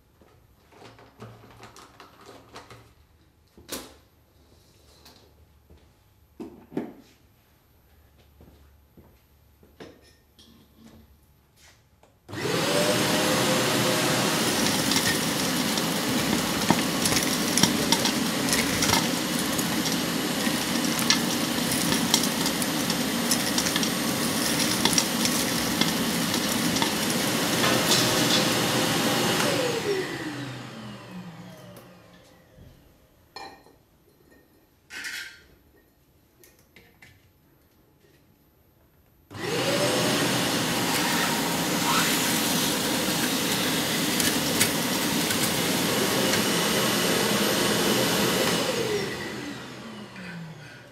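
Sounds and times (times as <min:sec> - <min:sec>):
wet and dry vacuum running: 0:12.3 - 0:32.6, 0:39.3 - 0:50.9
debris clicking in hose: 0:13.7 - 0:28.5, 0:41.8 - 0:46.5.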